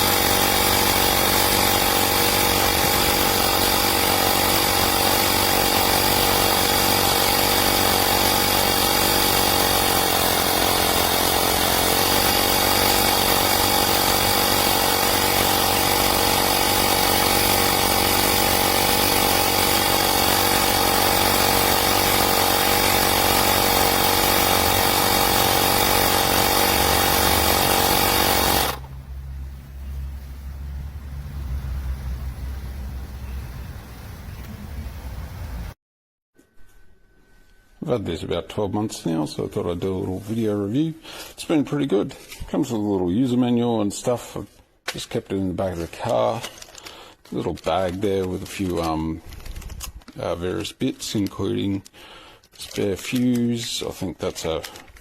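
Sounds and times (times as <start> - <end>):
electric tyre inflator buzzing: 0.0 - 30.1.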